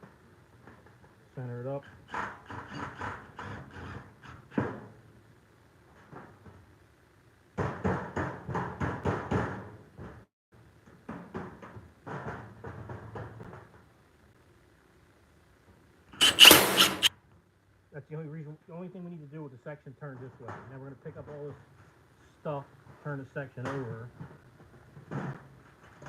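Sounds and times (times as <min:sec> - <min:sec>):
power driver driving screws: 0:16.2 - 0:17.1.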